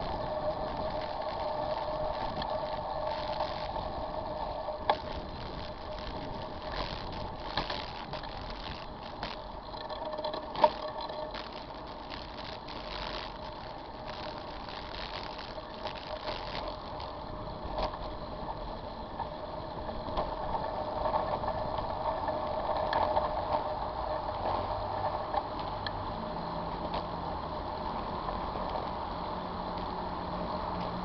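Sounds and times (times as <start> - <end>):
bicycle clicks and rattles: 0.0 - 26.2
city car traffic: 24.6 - 31.0.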